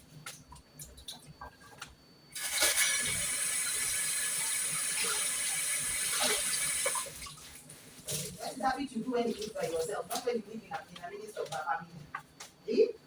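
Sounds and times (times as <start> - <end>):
water running into sink: 2.4 - 8.4.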